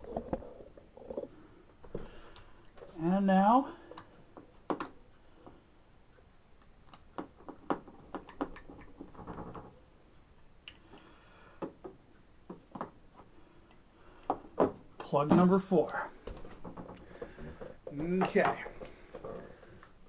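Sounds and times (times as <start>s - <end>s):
small clicks and taps: 6.6s - 9.7s.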